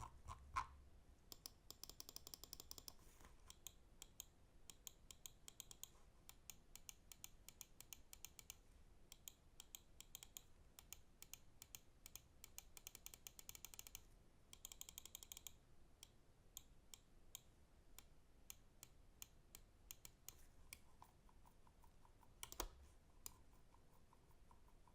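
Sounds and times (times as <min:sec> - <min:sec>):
mouse buttons clicking: 0:01.3 - 0:14.0, 0:22.4 - 0:23.4.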